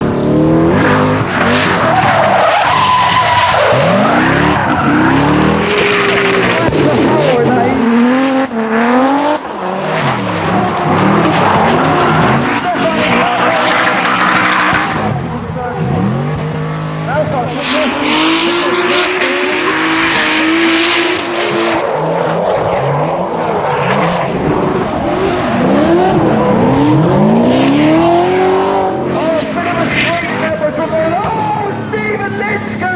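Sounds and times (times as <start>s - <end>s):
car engine revving: 0.0s - 32.9s
tyres screeching: 0.9s - 7.5s, 9.7s - 22.0s
tyres squealing: 1.2s - 7.5s.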